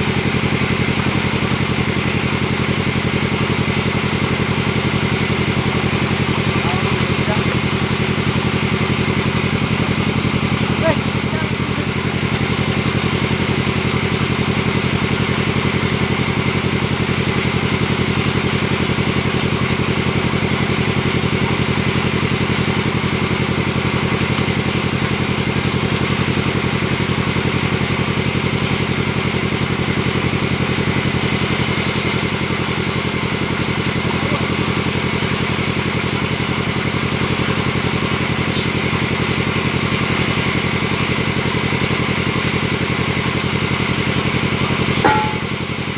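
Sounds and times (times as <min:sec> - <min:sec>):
sawmill machine droning: 0:00.0 - 0:20.0.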